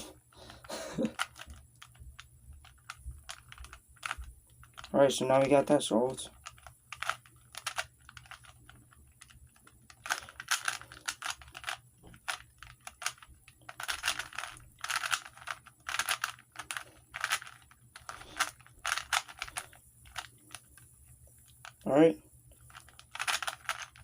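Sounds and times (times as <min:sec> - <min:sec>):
plastic puzzle cube clicking: 0:00.6 - 0:04.9, 0:06.3 - 0:20.8, 0:22.6 - 0:24.0.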